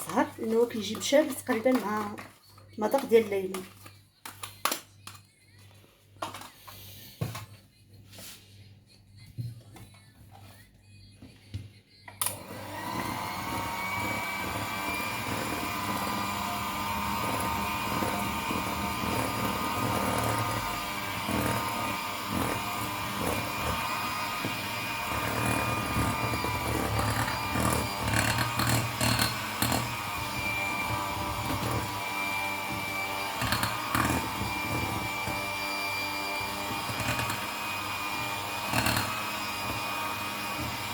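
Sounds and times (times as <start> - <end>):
electric mixer whining: 12.2 - 40.9
mixer clattering against bowl: 12.3 - 40.9.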